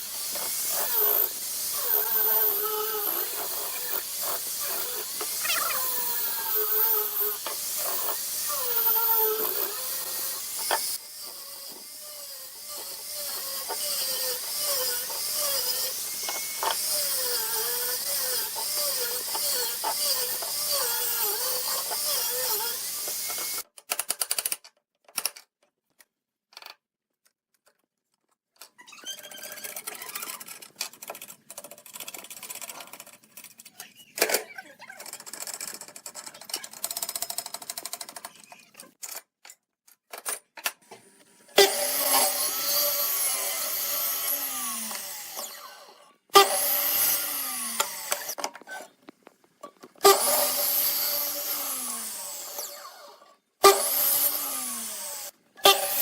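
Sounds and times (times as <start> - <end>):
power tool whine: 0.0 - 23.6, 41.6 - 48.4, 50.0 - 56.0.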